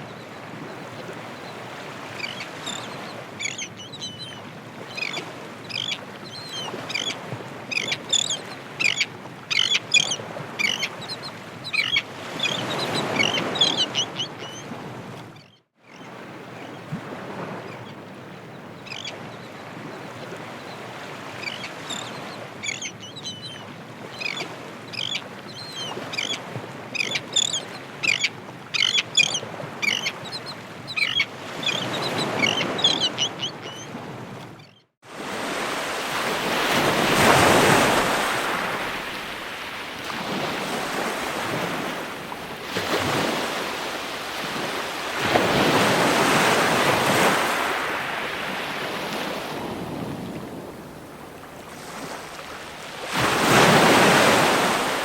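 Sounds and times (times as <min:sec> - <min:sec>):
ocean surf: 0:00.0 - 0:03.8, 0:04.4 - 0:15.4, 0:23.7 - 0:55.0
waves breaking: 0:00.0 - 0:15.4, 0:16.1 - 0:22.9, 0:23.7 - 0:55.0
birds calling: 0:00.7 - 0:14.7, 0:18.8 - 0:23.6, 0:24.2 - 0:33.9.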